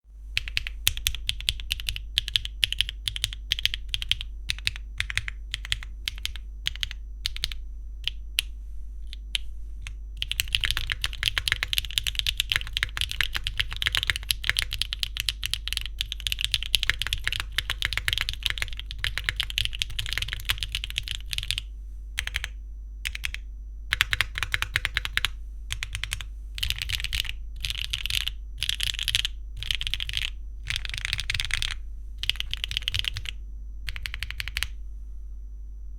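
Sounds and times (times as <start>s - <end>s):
typing on mechanical keyboard: 0.4s - 34.8s.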